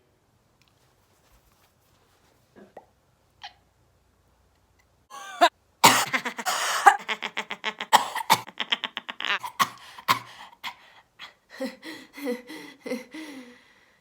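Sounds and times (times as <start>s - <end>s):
person coughing: 5.1s - 7.2s, 7.8s - 8.6s, 9.3s - 10.8s.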